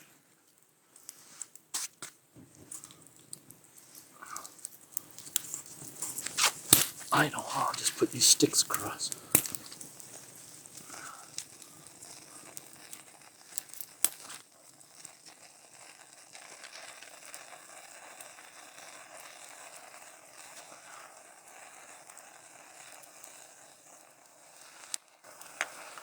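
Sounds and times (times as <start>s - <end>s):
sticks crackling and rustling: 2.7s - 7.1s, 8.7s - 11.5s.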